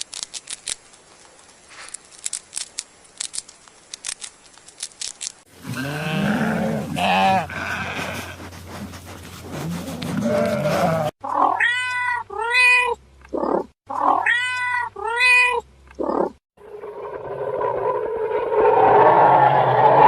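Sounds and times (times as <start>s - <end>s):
cat meowing: 11.3s - 15.6s.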